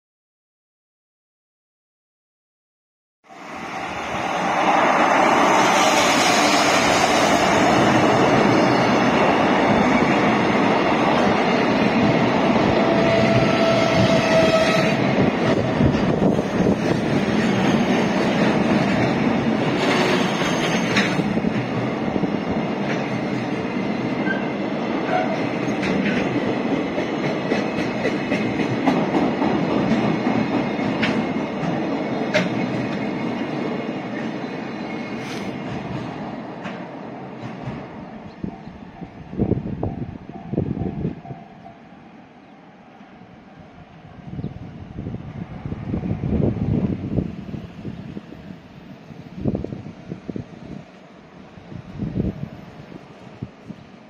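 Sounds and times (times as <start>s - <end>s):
freight train wheels on rail: 3.3s - 54.0s
train wheel squeal: 12.8s - 15.0s, 19.8s - 21.4s, 24.1s - 25.8s, 34.1s - 35.7s
clacks over rail joints: 16.8s - 21.9s, 25.1s - 33.2s, 35.6s - 38.6s.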